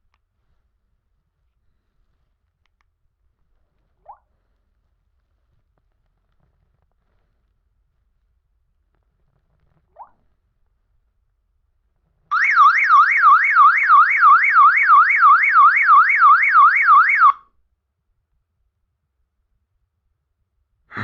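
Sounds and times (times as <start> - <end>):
warbling electronic phone alarm: 12.3 - 17.4.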